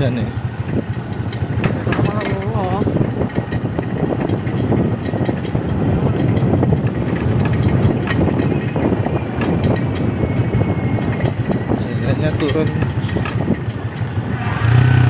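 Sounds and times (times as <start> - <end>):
small knocks and rattles: 0.0 - 14.2
rumble of tyres and bodywork: 0.0 - 15.0
vehicle engine idling: 0.0 - 15.0.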